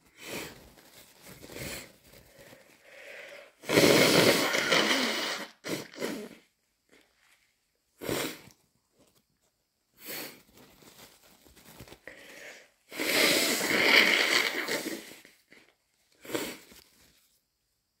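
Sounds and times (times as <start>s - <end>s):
person blowing nose: 0.0s - 0.7s, 1.3s - 6.5s, 8.0s - 8.5s, 10.0s - 10.5s, 12.2s - 15.6s, 16.2s - 16.8s
tissue rustling: 0.0s - 3.2s, 8.8s - 12.8s, 16.5s - 17.6s
person sniffling: 8.0s - 8.5s.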